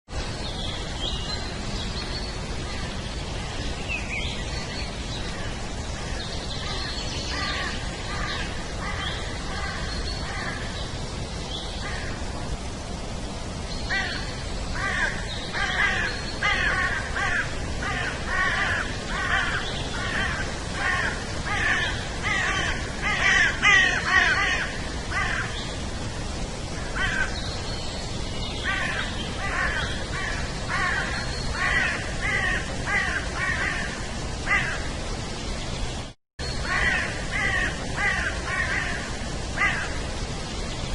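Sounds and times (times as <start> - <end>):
steady background hiss: 0.1 - 40.9.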